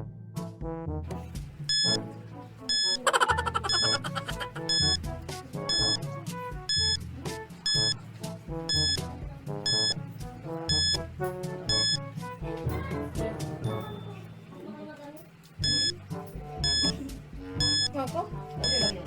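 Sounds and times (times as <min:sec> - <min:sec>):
high electronic beep: 0:01.7 - 0:02.0, 0:02.7 - 0:05.0, 0:05.7 - 0:06.0, 0:06.7 - 0:07.0, 0:07.7 - 0:08.0, 0:08.7 - 0:09.0, 0:09.7 - 0:10.0, 0:10.7 - 0:11.0, 0:11.7 - 0:12.0, 0:15.6 - 0:16.0, 0:16.6 - 0:17.0, 0:17.6 - 0:18.0, 0:18.6 - 0:19.0
background electronic music: 0:02.6 - 0:08.0.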